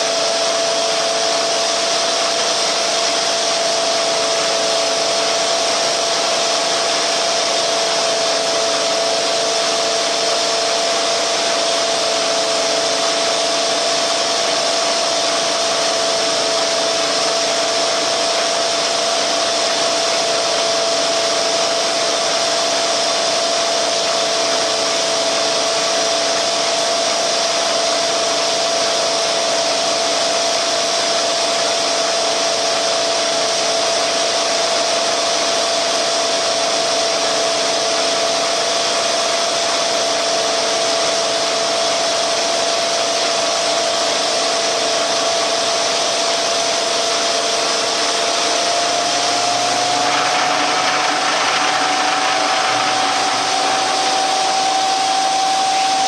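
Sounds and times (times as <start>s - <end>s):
milling machine cutting metal: 0.0s - 56.0s.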